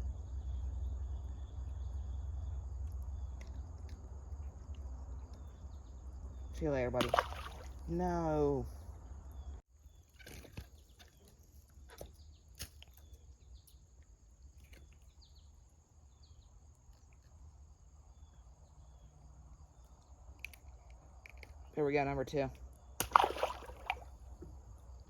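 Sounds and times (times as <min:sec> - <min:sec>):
faint low rumble: 0:00.0 - 0:09.6.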